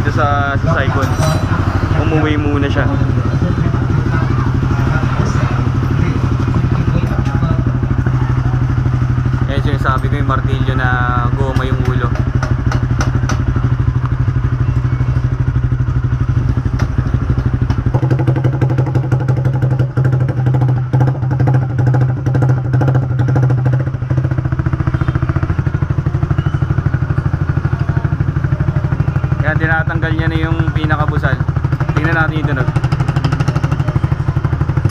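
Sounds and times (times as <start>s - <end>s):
motorcycle engine idling: 0.0s - 34.9s
sharp knocks: 11.6s - 13.5s.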